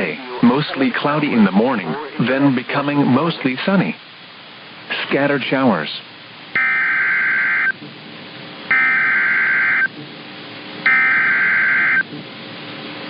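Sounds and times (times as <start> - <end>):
buzzing digital data tones: 6.6 - 7.8, 8.7 - 9.9, 10.9 - 12.1.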